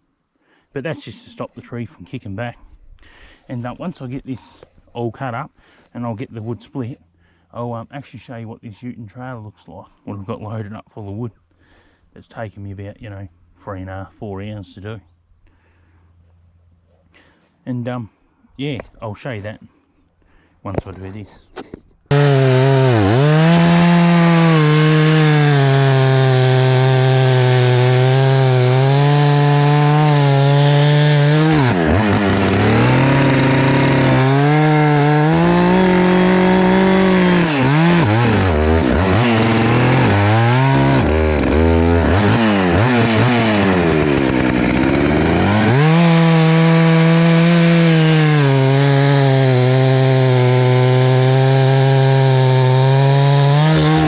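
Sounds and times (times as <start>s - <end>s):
chainsaw running at high revs: 22.1s - 54.0s.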